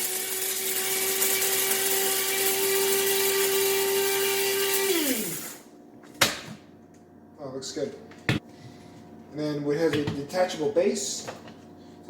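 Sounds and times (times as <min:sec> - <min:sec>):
electric coffee grinder running: 0:00.0 - 0:05.7.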